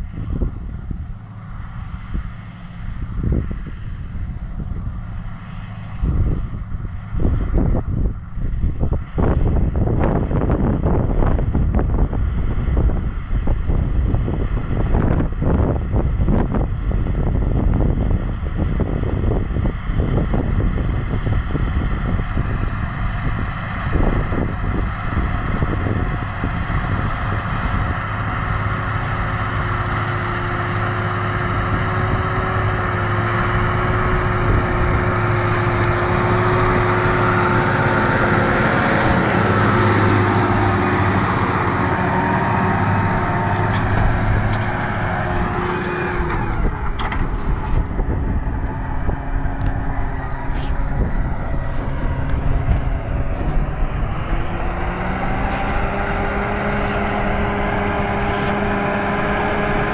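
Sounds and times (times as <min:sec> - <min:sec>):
tractor diesel engine under load: 0:00.0 - 0:59.9
steady whine: 0:20.1 - 0:59.9.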